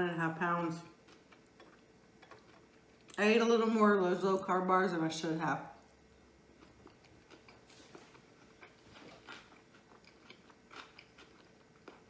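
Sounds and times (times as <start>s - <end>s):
close-up chewing: 0.6s - 3.2s, 6.3s - 12.0s.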